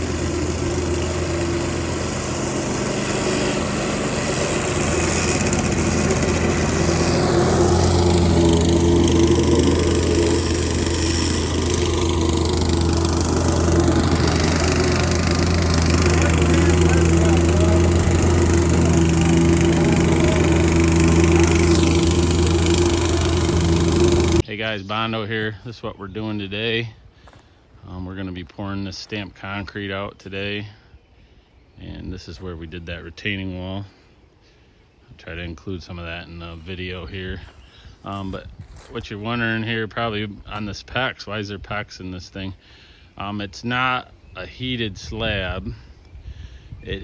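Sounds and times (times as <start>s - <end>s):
small engine running: 0.0s - 24.4s.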